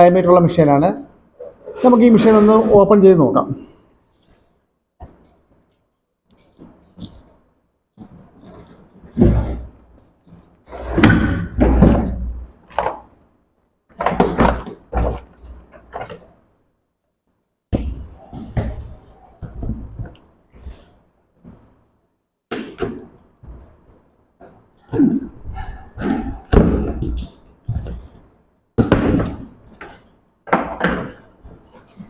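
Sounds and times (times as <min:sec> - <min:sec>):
knocks and thumps: 0:08.0 - 0:13.1, 0:17.7 - 0:21.8, 0:22.5 - 0:32.0.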